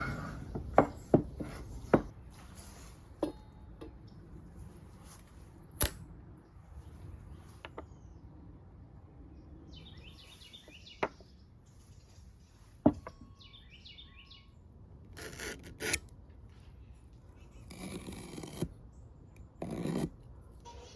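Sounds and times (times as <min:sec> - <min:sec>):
small bird chirping: 0:09.4 - 0:14.6
rasping strokes on wood: 0:15.2 - 0:16.0, 0:17.4 - 0:18.7, 0:19.6 - 0:20.2.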